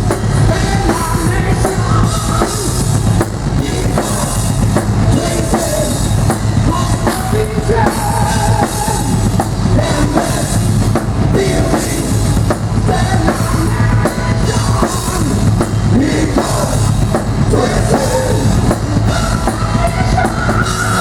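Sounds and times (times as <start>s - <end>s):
bass drum: 0.0s - 21.0s
heavy metal band playing: 0.0s - 21.0s.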